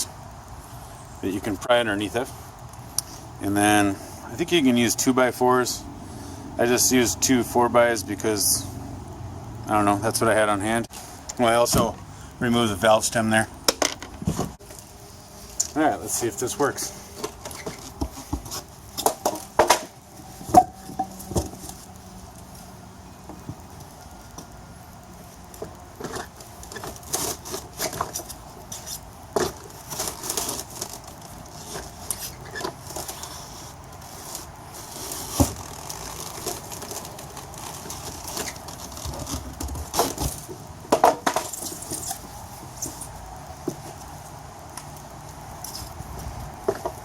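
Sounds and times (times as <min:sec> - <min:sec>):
wooden boards knocking and creaking: 0:13.7 - 0:14.6, 0:17.2 - 0:21.6, 0:38.0 - 0:42.1.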